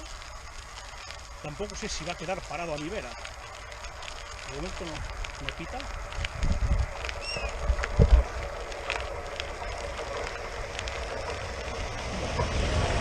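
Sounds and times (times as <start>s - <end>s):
wind buffeting microphone: 1.3s - 13.0s
electric train approaching: 6.8s - 13.0s.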